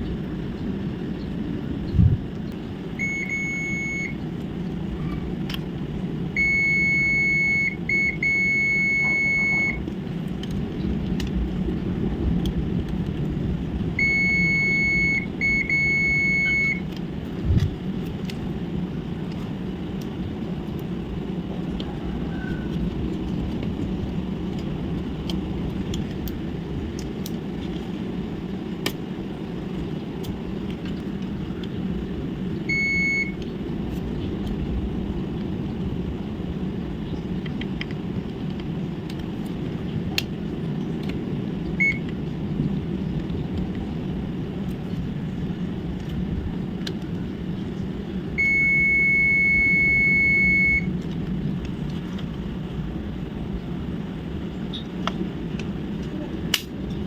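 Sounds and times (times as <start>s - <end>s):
electronic beeper: 3.0s - 4.2s, 6.4s - 9.8s, 14.0s - 16.8s, 48.4s - 50.9s.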